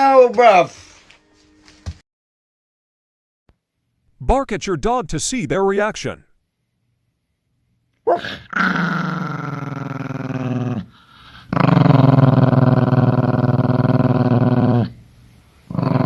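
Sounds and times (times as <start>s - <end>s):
dog growling: 8.1s - 15.0s, 15.7s - 16.0s.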